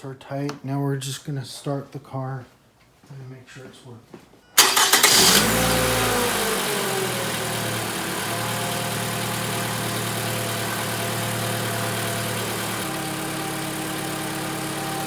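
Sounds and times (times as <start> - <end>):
car engine starting and idling: 4.6 - 15.0.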